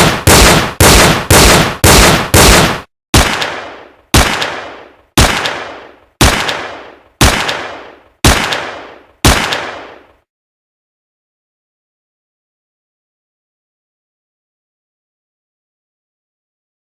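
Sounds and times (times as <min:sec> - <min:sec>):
gunshots with echo: 0:00.0 - 0:10.2.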